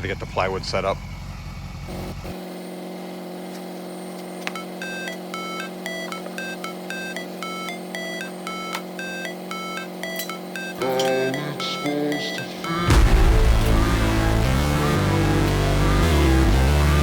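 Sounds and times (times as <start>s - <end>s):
melody of short high notes: 4.6s - 17.0s
steady held chord: 11.4s - 17.0s.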